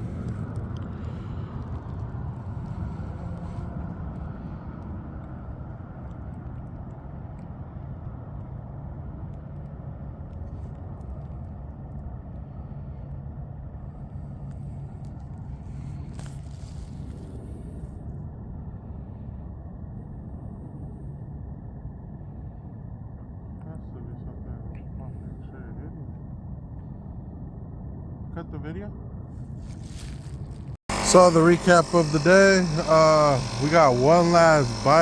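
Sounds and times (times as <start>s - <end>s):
motor vehicle rumbling: 0.0s - 7.8s, 29.6s - 35.0s.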